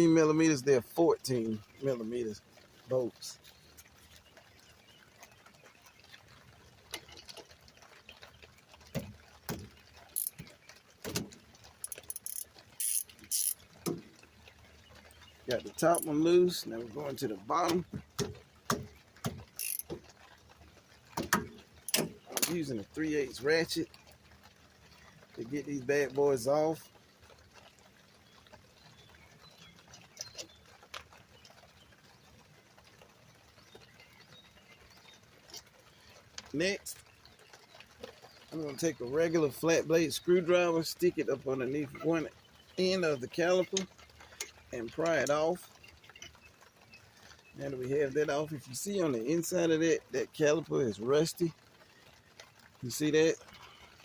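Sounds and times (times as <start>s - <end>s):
metallic clicks and knocks: 8.9s - 14.2s, 17.6s - 20.1s, 21.2s - 22.6s
ratchet clicking: 11.8s - 13.6s, 19.6s - 19.9s.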